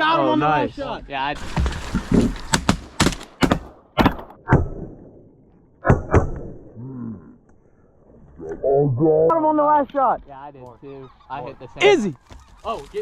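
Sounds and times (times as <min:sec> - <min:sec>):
sharp knocks and clunks: 0:01.4 - 0:04.6.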